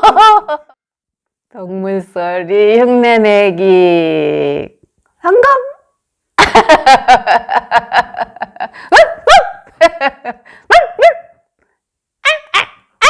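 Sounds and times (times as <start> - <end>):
dog yapping barks: 10.7 - 11.4.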